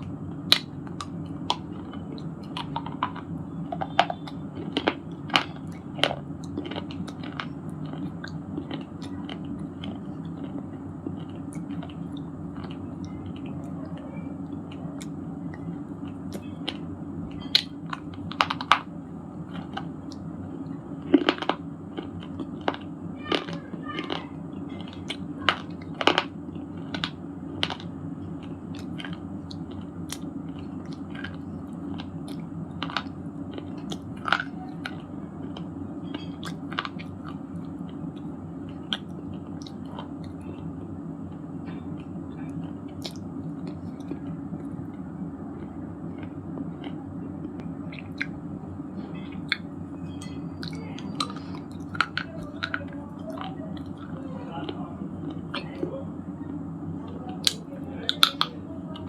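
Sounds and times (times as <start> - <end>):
steady low hum: 0.0 - 59.0
chewing stone crunches: 0.4 - 13.5.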